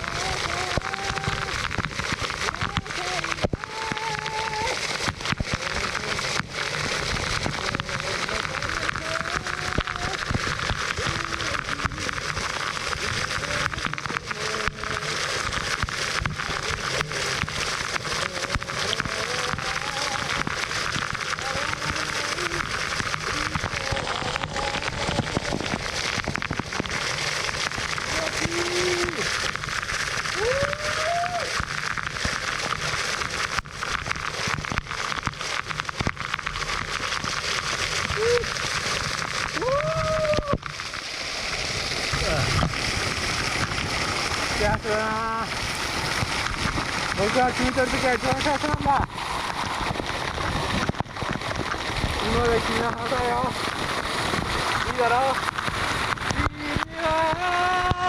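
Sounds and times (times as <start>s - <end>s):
waterfall pouring and splashing: 0.0s - 58.0s
man singing long notes: 56.4s - 58.0s.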